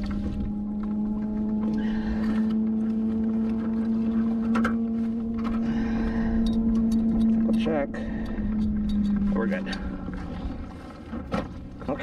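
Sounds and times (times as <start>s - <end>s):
boat engine humming: 0.0s - 12.0s
wind rumble on microphone: 0.0s - 12.0s.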